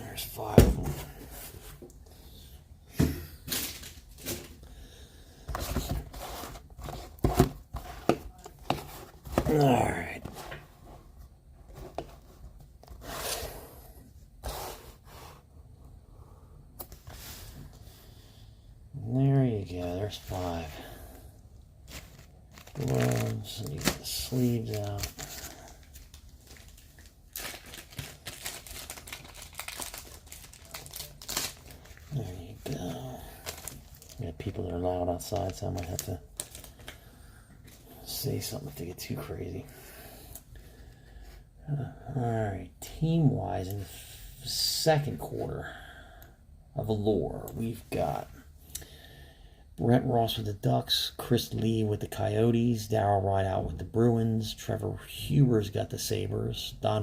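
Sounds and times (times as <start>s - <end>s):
cardboard sliding and rustling: 5.5s - 9.6s
plastic packaging crinkling: 21.8s - 37.0s.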